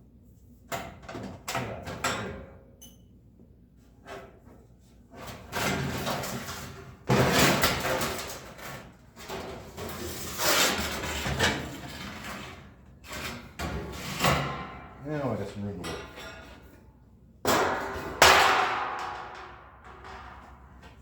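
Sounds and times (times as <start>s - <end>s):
sheet metal scraping and clattering: 5.3s - 14.8s.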